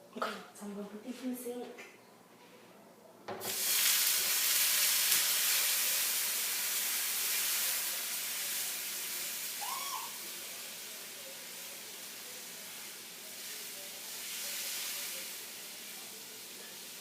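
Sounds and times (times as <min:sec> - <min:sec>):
water sizzling on hot frying pan: 0:03.4 - 0:17.0.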